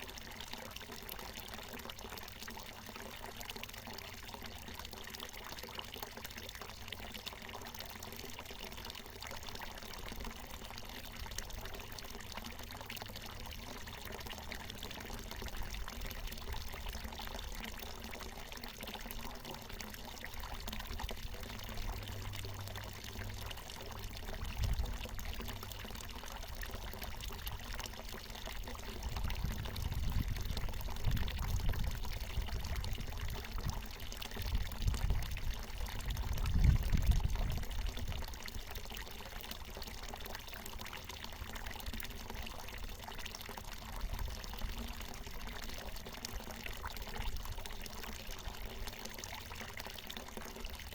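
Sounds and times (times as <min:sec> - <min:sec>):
spring water pouring and splashing: 0:00.0 - 0:50.9
low uneven rumbling: 0:20.9 - 0:25.9.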